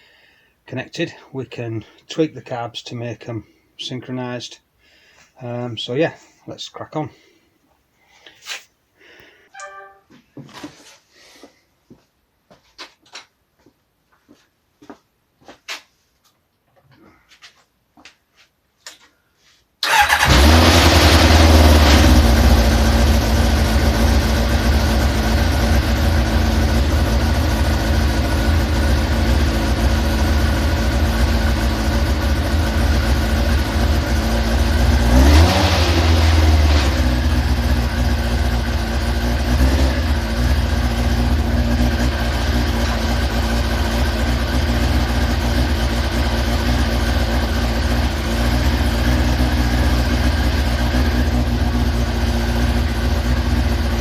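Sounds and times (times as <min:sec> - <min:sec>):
throttle blip revving engine: 0:19.8 - 0:54.0.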